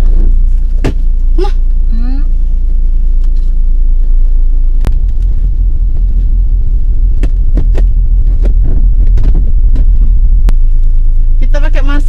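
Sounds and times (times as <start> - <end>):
road vehicle rumbling: 0.0 - 12.0
sharp knocks: 7.1 - 10.0.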